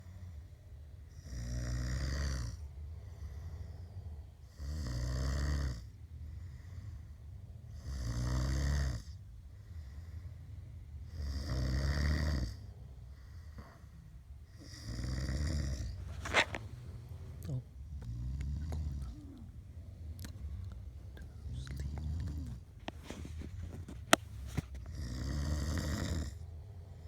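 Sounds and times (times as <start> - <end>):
man snoring: 1.2 - 2.6, 11.2 - 12.6, 14.6 - 16.7, 17.4 - 19.5, 20.4 - 23.2, 24.9 - 26.4.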